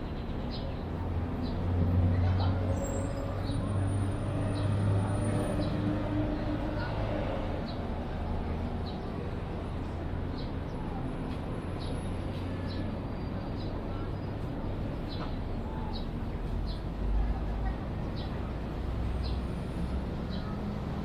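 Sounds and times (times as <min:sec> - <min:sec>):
background chatter: 0:00.0 - 0:21.0.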